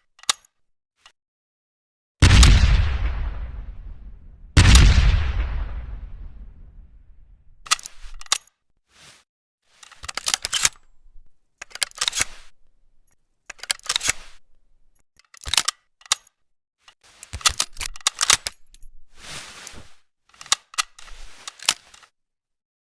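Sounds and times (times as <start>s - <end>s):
shotgun clicks and clacks: 7.6s - 8.5s, 9.8s - 12.5s, 13.5s - 14.4s, 15.2s - 16.4s, 17.3s - 18.8s.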